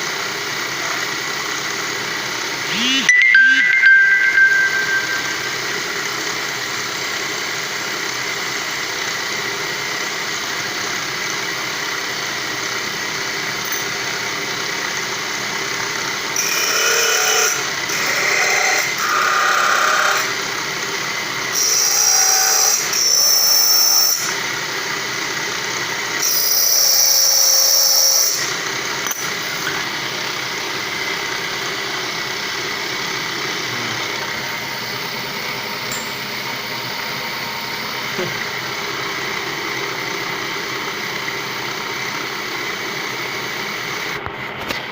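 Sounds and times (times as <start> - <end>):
high-pitched whine: 2.6 - 6.6
polishing machine running: 28.5 - 44.2.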